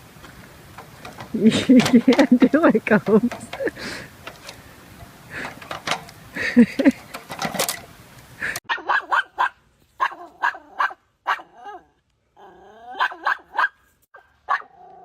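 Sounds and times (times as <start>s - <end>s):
dog barking: 8.7s - 11.9s, 12.8s - 14.9s
dog growly call: 10.1s - 13.4s.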